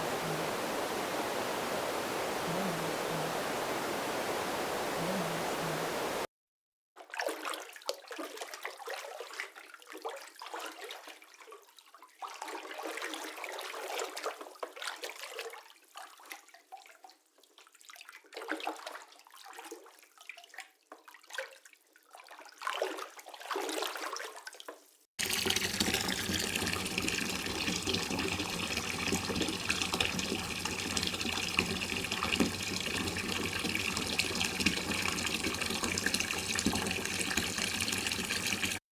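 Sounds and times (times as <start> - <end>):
rushing running water: 0.0 - 6.3, 25.2 - 38.8
water splashing and trickling: 7.0 - 38.8.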